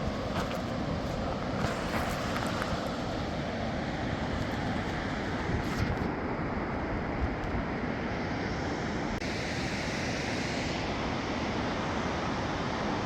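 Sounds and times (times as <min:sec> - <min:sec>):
river rushing: 0:00.0 - 0:05.8.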